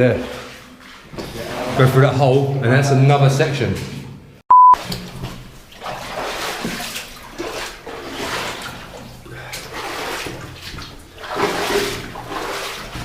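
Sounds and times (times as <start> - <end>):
footsteps wading through water: 0.0 - 1.9, 4.8 - 13.0.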